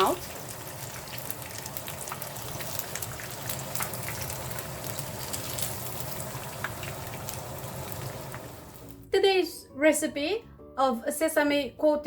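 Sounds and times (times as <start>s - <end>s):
fish deep-frying in oil: 0.0s - 9.0s.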